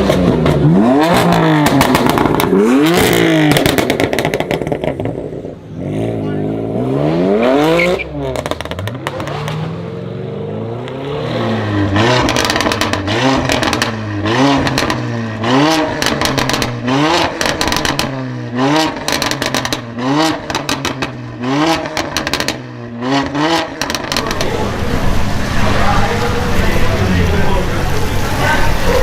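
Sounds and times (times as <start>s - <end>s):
exhaust pops and crackles: 0.0s - 5.3s, 8.2s - 9.6s, 12.0s - 29.0s
car engine revving: 0.0s - 29.0s.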